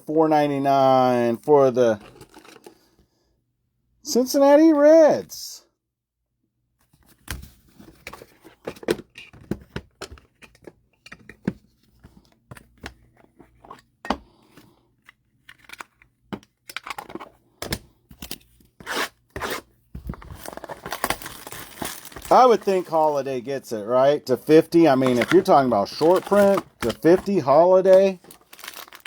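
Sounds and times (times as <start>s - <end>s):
plastic card sleeves crinkling: 18.9s - 29.0s.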